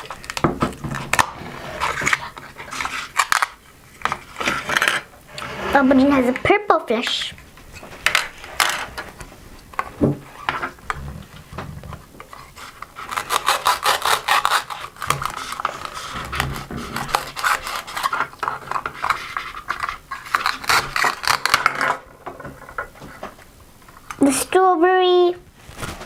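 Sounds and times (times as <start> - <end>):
velcro tearing apart: 13.0 - 16.0, 16.8 - 18.1, 20.1 - 21.8.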